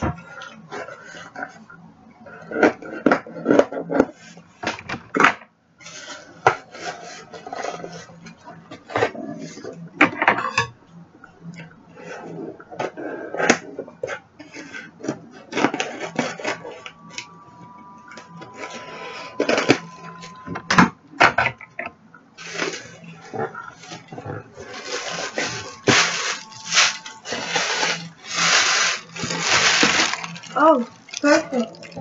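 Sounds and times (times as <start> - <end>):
packaging rustling and tearing: 23.8 - 32.0
scissors cutting package: 24.7 - 31.4.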